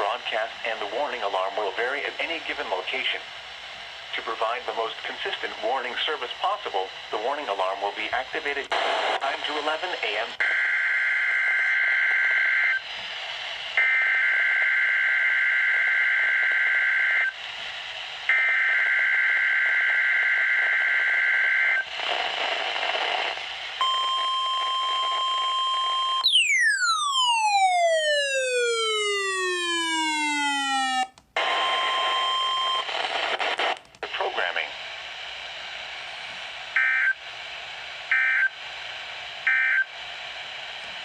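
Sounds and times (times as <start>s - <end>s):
radio static hiss: 0.0s - 26.0s, 31.4s - 41.0s
steady warning alarm tone: 23.8s - 32.8s.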